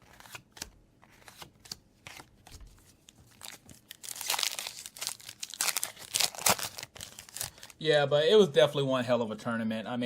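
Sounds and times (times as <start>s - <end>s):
foil wrapper crinkling and tearing: 3.3s - 7.8s.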